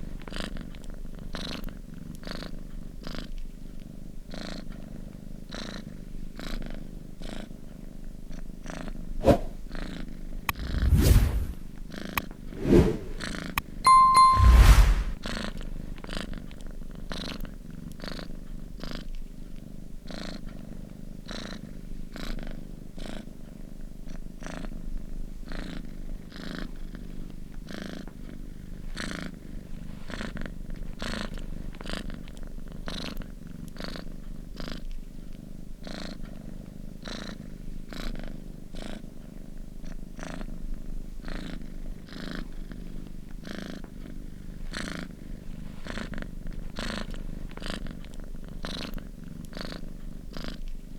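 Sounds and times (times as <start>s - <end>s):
cat purring: 17.2s - 50.9s.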